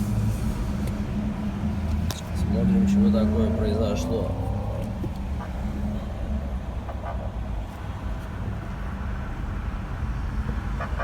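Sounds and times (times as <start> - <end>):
car engine and tyres rumbling: 0.0 - 11.0.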